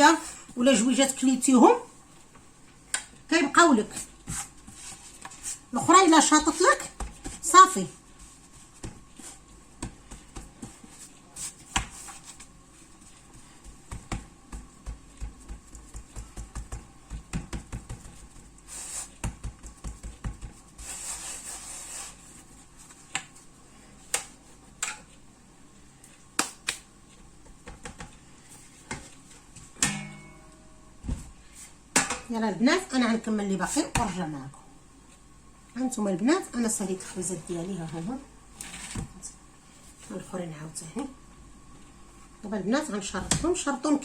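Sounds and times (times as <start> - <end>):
soft thumps of dough: 6.8 - 20.9
hands knocking dough on surface: 13.6 - 18.6, 19.2 - 20.7.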